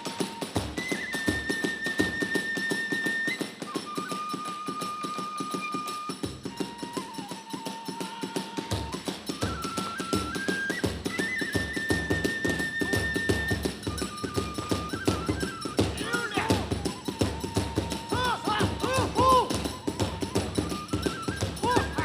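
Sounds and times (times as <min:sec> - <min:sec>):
bamboo flute long notes: 0:00.0 - 0:22.0
small hand cymbals clashing: 0:12.3 - 0:22.0.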